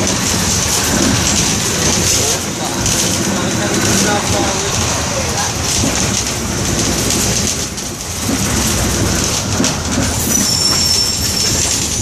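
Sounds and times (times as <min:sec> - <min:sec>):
engine rattle and hiss: 0:00.0 - 0:12.0
high thin squeal: 0:10.2 - 0:11.8.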